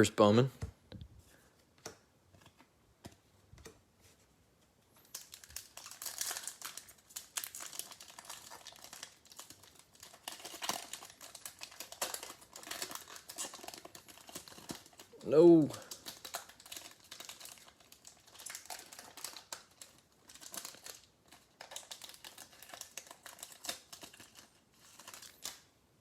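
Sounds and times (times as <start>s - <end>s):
plastic wrapper crinkling: 5.0s - 25.7s.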